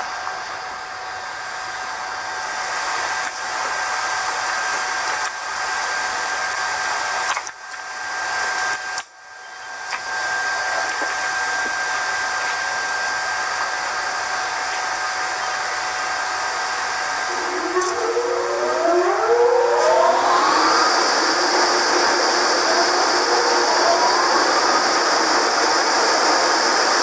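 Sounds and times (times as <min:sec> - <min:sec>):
locomotive blower whooshing hum: 0:15.8 - 0:27.0.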